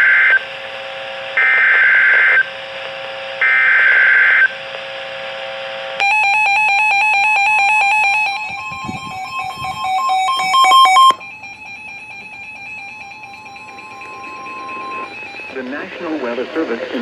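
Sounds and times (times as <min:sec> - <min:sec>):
buzzy alarm tone: 0:06.0 - 0:16.4
digital data screeches: 0:07.6 - 0:11.2.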